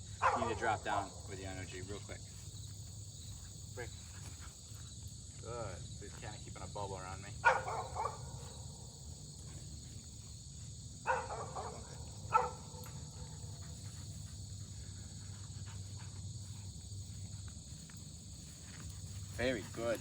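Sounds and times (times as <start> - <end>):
insects trilling: 0.0 - 20.0
dog barking: 0.2 - 0.9, 7.4 - 8.5, 11.0 - 13.7.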